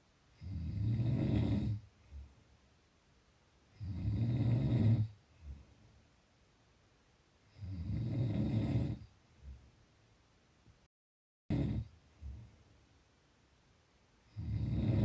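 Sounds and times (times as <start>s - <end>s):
person snoring: 0.4s - 1.8s, 3.8s - 5.2s, 7.5s - 9.1s, 11.5s - 11.9s, 14.3s - 15.0s.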